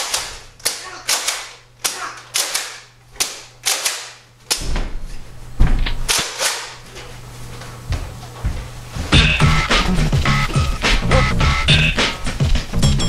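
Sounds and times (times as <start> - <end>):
toy blaster firing foam darts: 0.0 - 4.2
loud hit: 9.1 - 12.4.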